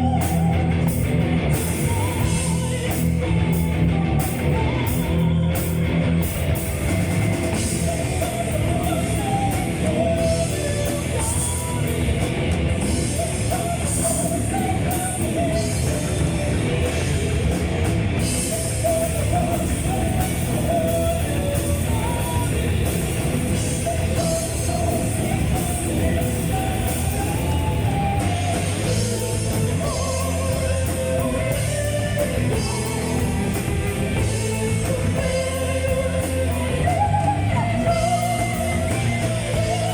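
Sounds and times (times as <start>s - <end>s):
woman singing: 0.0s - 17.6s, 18.2s - 39.9s
distorted guitars: 0.0s - 39.9s
drum kit: 0.0s - 39.9s.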